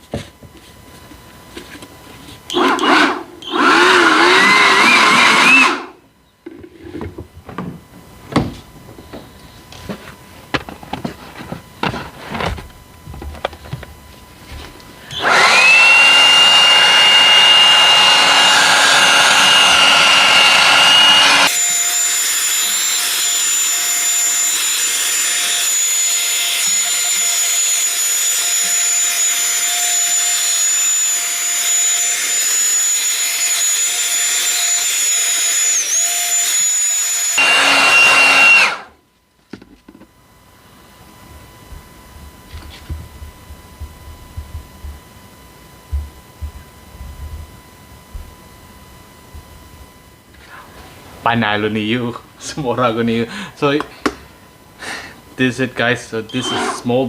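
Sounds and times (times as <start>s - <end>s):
blower motor whining: 2.3s - 6.0s, 12.4s - 39.0s.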